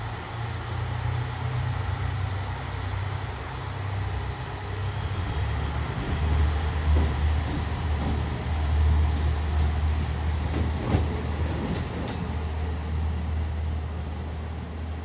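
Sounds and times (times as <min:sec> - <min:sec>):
diesel railcar engine rumble: 0:00.0 - 0:15.0
wheel clicks over rail joints: 0:05.9 - 0:12.3.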